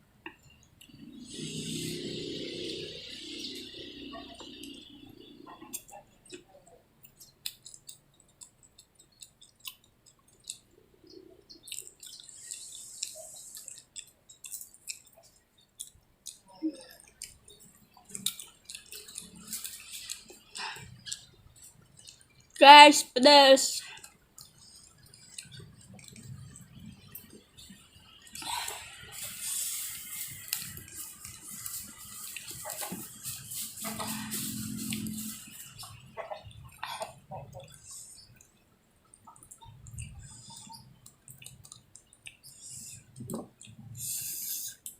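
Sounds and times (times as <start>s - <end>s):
person chewing food: 0.3s - 22.6s, 23.9s - 44.9s
wet clicking and smacking: 4.4s - 22.6s, 23.9s - 33.5s, 35.6s - 44.0s
hiss: 29.1s - 30.5s, 44.0s - 44.8s.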